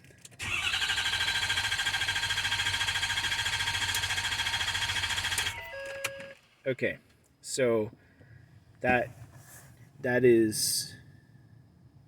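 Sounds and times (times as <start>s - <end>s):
diesel engine cranking: 0.1s - 5.6s
high starter whine: 0.2s - 6.6s.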